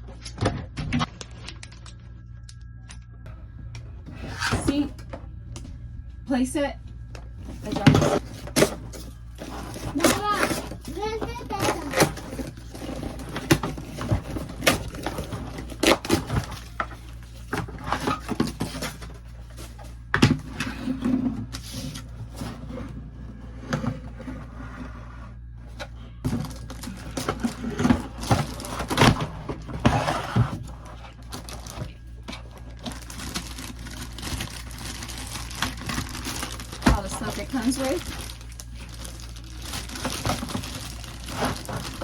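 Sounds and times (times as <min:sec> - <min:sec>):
packaging rustling: 0:07.4 - 0:23.0, 0:25.7 - 0:42.0.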